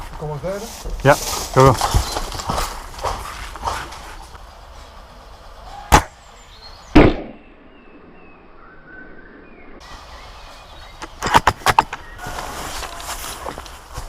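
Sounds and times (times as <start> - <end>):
airsoft rifle shot: 5.9 - 6.2, 6.9 - 7.5.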